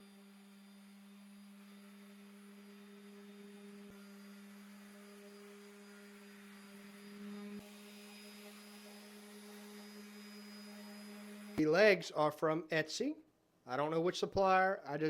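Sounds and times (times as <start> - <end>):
orbital sander running: 0.0 - 11.6.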